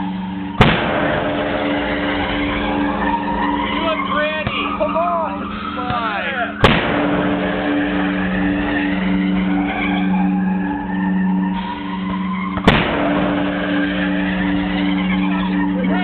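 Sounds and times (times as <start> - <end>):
hail cannon blast: 0.0 - 4.8, 5.5 - 9.4, 11.5 - 15.4
steady pulsing hum: 0.0 - 16.0.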